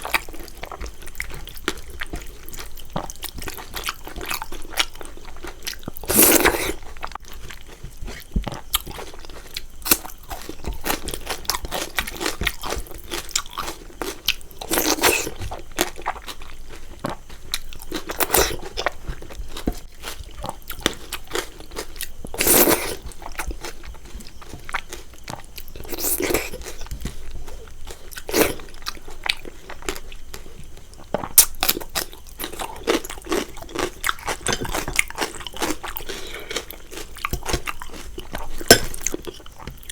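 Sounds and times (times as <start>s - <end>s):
person chewing crunchy food: 0.0s - 39.9s
crunching bite: 31.3s - 39.9s.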